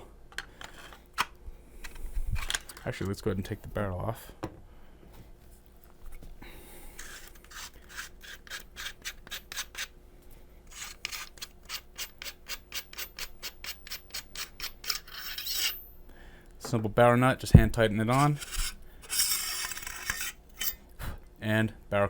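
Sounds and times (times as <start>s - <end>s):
metal threads rasping: 7.0s - 9.9s, 10.7s - 16.0s, 18.0s - 20.8s.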